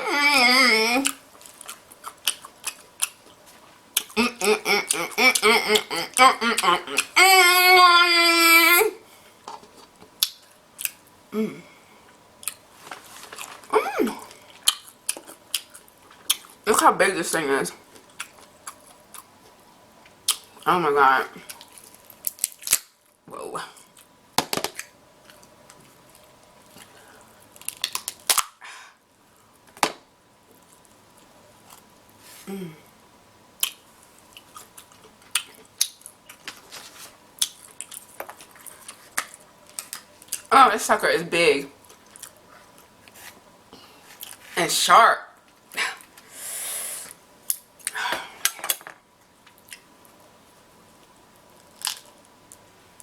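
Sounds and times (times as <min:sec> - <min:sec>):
crab shell cracking: 0:21.9 - 0:23.0, 0:27.5 - 0:28.6, 0:51.6 - 0:52.3.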